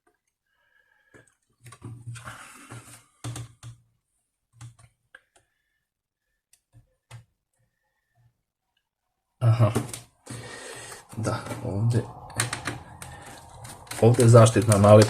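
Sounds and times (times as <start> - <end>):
hands clicking laptop plastic parts: 1.0 - 3.8, 4.5 - 5.5, 9.7 - 15.0.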